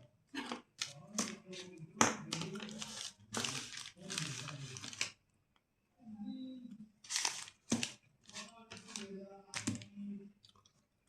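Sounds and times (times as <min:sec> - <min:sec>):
person's voice: 0:00.4 - 0:05.0, 0:06.0 - 0:06.8, 0:08.3 - 0:10.4
plastic wrappers crinkling: 0:02.3 - 0:05.1, 0:07.1 - 0:09.9.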